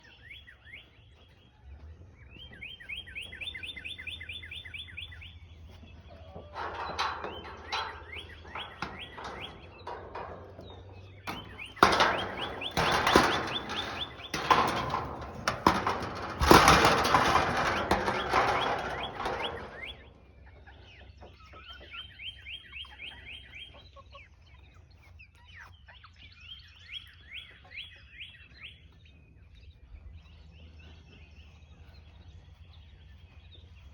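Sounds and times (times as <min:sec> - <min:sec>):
birds chirping: 0:02.2 - 0:24.0
rapid clicking bird chatter: 0:06.5 - 0:23.4.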